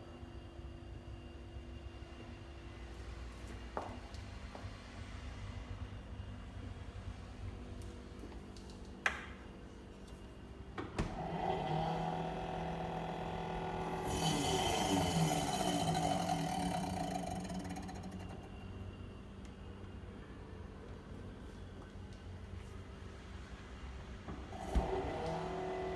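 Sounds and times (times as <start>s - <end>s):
refrigerator motor droning hum: 0.0s - 25.9s
refrigerator motor clicks: 10.8s - 18.7s, 24.5s - 25.9s.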